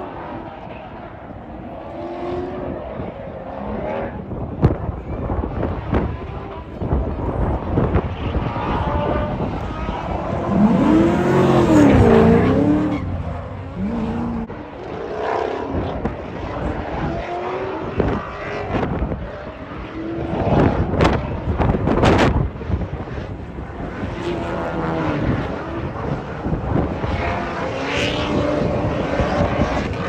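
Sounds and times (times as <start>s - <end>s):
wind buffeting microphone: 4.1s - 30.0s
car engine revving: 7.6s - 22.3s.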